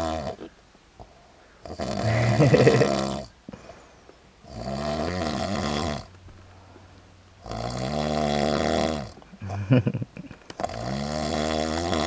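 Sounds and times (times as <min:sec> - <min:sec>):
man snoring: 0:01.6 - 0:03.3, 0:04.4 - 0:06.1, 0:07.4 - 0:10.0, 0:10.6 - 0:12.0.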